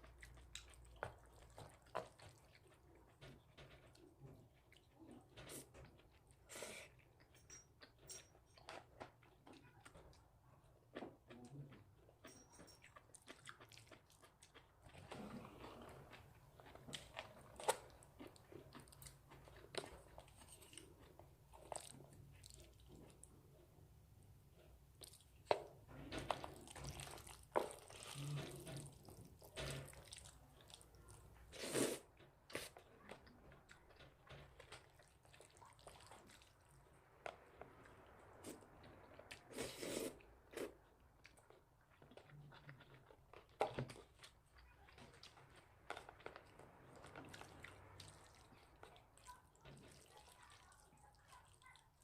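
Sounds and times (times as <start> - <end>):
wet chewing and mouth smacks: 0.0 - 3.2, 8.6 - 23.4, 25.0 - 50.1.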